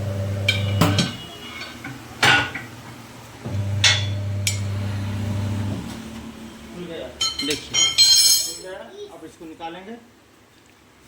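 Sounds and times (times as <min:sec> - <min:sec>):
tyre-changer machine humming: 0:00.0 - 0:01.2, 0:03.4 - 0:08.4.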